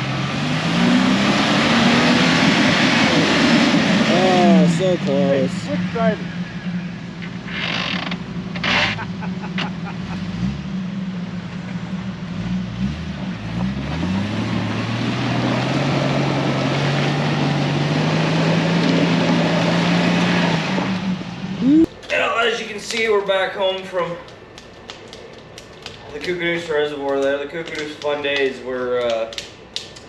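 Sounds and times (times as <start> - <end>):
vehicle engine revving: 0.0 - 21.9.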